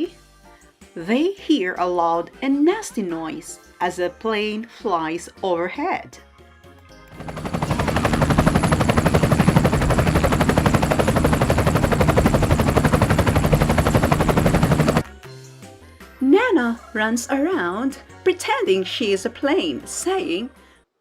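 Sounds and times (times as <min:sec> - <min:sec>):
aircraft flyover chopping drone: 0:07.1 - 0:15.0.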